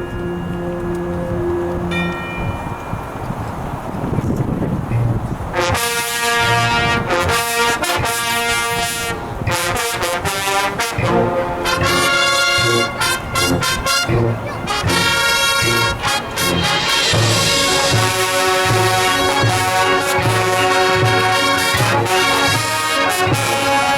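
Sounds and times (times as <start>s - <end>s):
marching band brass chords: 0.0s - 2.2s, 5.5s - 23.9s
low regular drum beats: 11.0s - 23.9s.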